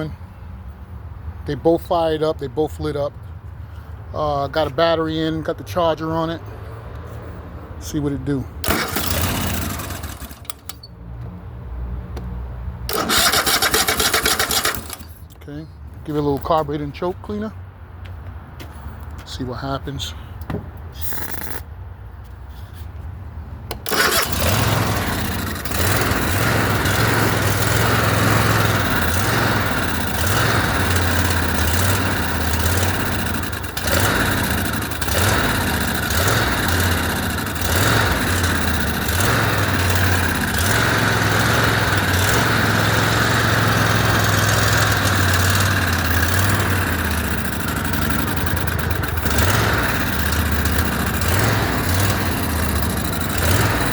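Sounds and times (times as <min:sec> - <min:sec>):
mower engine cranking: 0:07.8 - 0:11.0, 0:12.8 - 0:15.4, 0:21.0 - 0:21.7, 0:23.7 - 0:53.9
engine running unevenly: 0:08.0 - 0:11.3, 0:12.9 - 0:15.6, 0:23.7 - 0:53.9.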